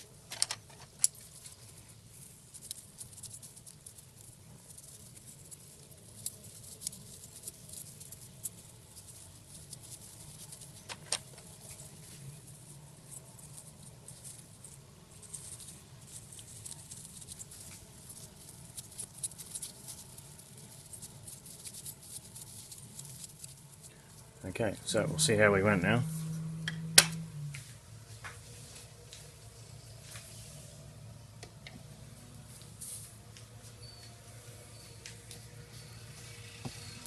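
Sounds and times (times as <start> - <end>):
light scratching on plastic: 0.6 - 27.0.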